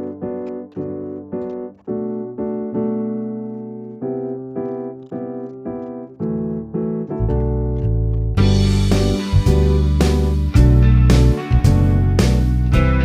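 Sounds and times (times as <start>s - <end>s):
piano chords: 0.0s - 13.0s
deep bass: 7.2s - 13.0s.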